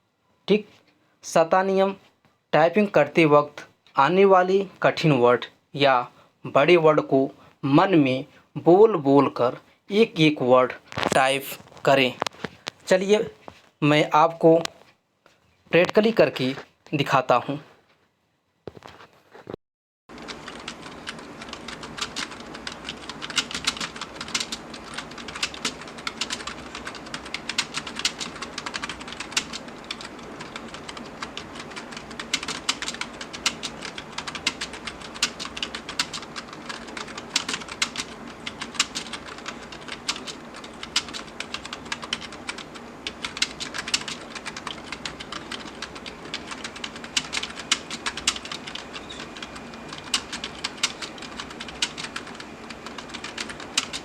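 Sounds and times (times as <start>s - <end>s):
fast typing on computer keyboard: 20.1s - 54.0s.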